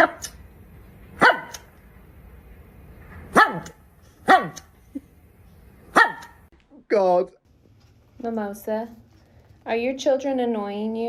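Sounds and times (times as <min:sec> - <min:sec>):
dog barking: 0:01.2 - 0:01.7, 0:03.3 - 0:04.7, 0:05.9 - 0:06.5.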